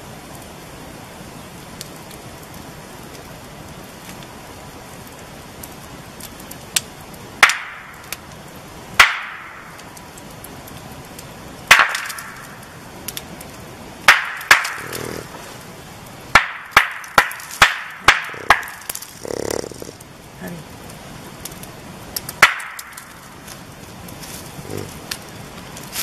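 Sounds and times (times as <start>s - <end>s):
background hiss: 0.0s - 26.0s
rocks clacking together: 16.4s - 20.0s.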